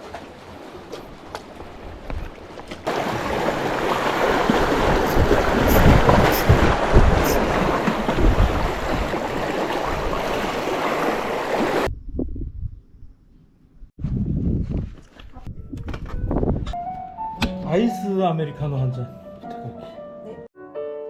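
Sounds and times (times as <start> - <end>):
sea rushing: 0.0 - 11.9
wind buffeting microphone: 2.9 - 13.2, 13.9 - 16.8.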